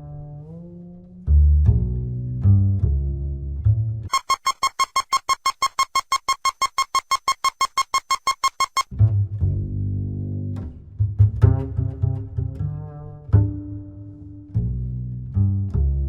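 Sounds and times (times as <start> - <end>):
bowed and plucked bass music: 0.0 - 4.1, 8.9 - 16.0
rapid buzzy electronic beeping: 4.1 - 8.9.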